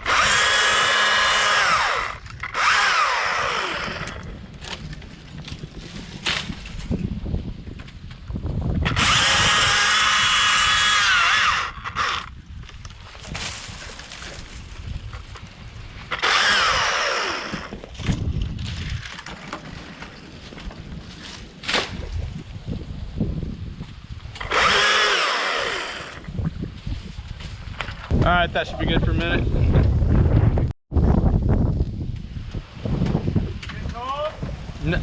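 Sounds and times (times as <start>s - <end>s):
chainsaw revving and cutting: 0.0s - 4.9s, 8.9s - 12.3s, 16.1s - 17.8s, 24.4s - 26.3s.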